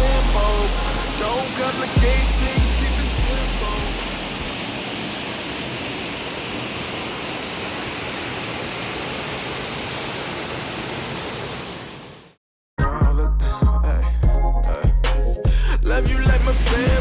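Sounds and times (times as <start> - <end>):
waterfall rushing: 0.0 - 12.4.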